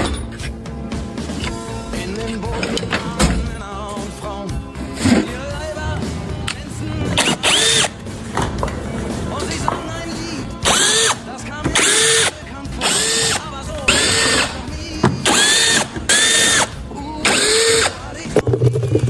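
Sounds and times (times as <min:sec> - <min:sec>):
cordless drill whining: 0:07.2 - 0:08.0, 0:10.6 - 0:19.0.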